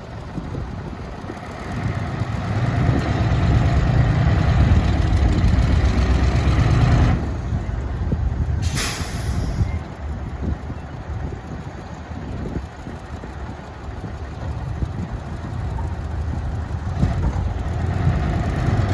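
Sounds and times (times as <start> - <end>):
diesel engine revving: 0.2 - 18.9
air hiss: 8.6 - 9.7.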